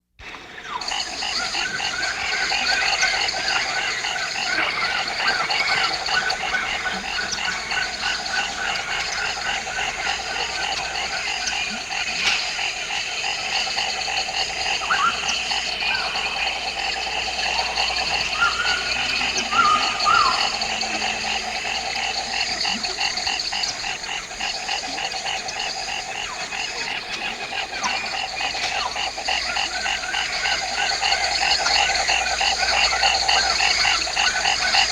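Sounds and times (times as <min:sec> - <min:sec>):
frogs calling in chorus: 0:00.3 - 0:34.9
higher frog calls: 0:00.3 - 0:34.9.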